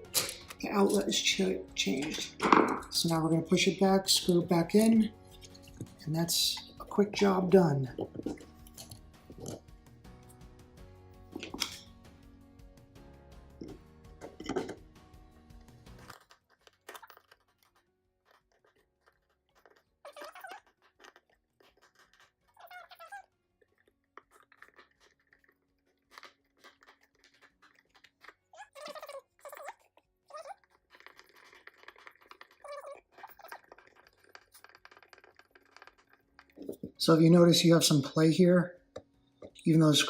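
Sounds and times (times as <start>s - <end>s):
outlet scraping and creaking: 0.0s - 9.7s, 15.6s - 29.7s, 30.3s - 37.1s.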